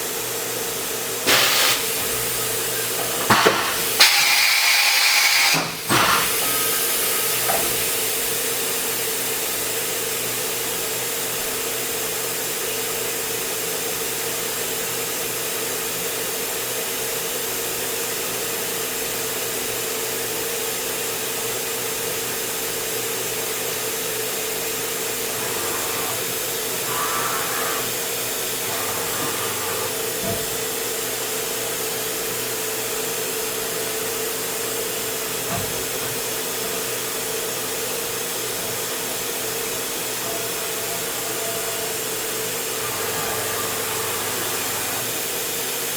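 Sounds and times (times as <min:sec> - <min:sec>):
machining center hiss and whine: 0:01.3 - 0:09.2, 0:25.0 - 0:31.0, 0:33.1 - 0:45.7.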